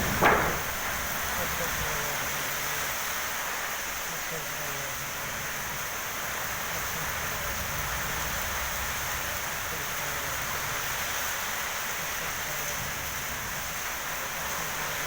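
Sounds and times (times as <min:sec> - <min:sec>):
wind gusts rumbling: 0:00.0 - 0:02.6
heavy rain: 0:00.0 - 0:15.0.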